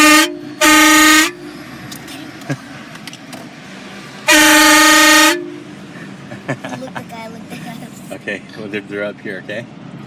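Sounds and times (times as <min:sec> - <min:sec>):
train horn short blasts: 0:00.0 - 0:01.5, 0:04.3 - 0:05.7.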